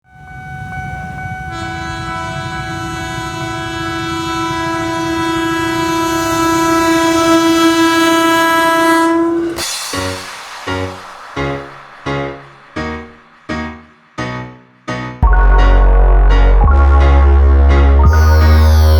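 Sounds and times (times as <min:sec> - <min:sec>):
train rumbling on rails: 0:00.0 - 0:15.2
train horn two-tone blast: 0:00.1 - 0:09.8
piano music: 0:00.3 - 0:18.9.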